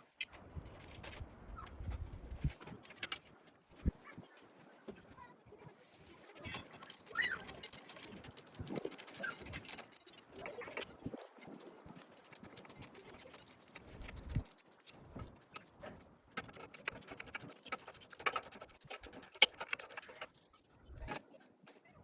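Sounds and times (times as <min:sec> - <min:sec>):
tools and metal parts clicking: 0:02.3 - 0:03.9, 0:06.4 - 0:21.2.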